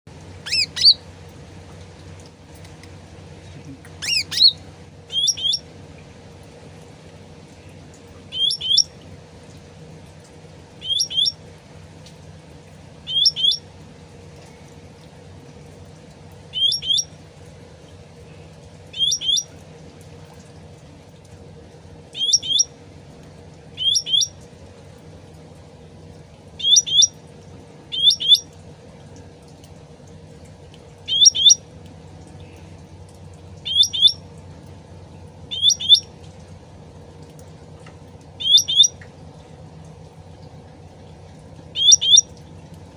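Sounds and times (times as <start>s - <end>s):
songbird chirping: 0.4s - 1.1s, 3.6s - 5.7s, 7.4s - 9.1s, 10.8s - 11.4s, 13.1s - 13.7s, 16.5s - 17.2s, 18.2s - 19.6s, 22.1s - 22.8s, 23.7s - 24.5s, 26.6s - 27.2s, 27.9s - 28.5s, 31.0s - 31.7s, 33.6s - 34.2s, 35.2s - 36.2s, 38.4s - 39.1s, 41.7s - 42.7s.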